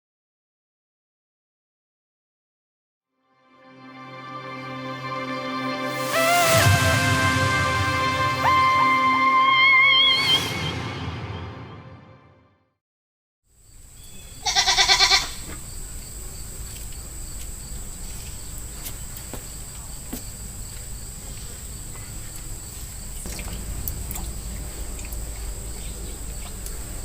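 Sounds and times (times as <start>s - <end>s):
farmyard background: 14.0s - 27.0s
goat bleating: 14.4s - 15.6s.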